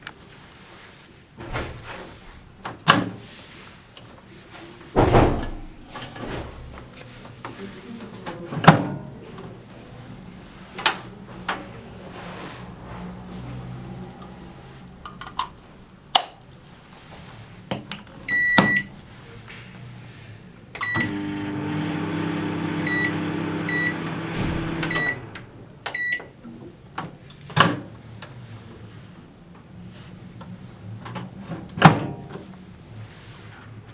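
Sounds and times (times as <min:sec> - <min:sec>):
microwave beeps: 0:18.3 - 0:18.9, 0:20.8 - 0:26.3
microwave clicks: 0:20.8 - 0:26.2
microwave oven humming: 0:20.8 - 0:26.3.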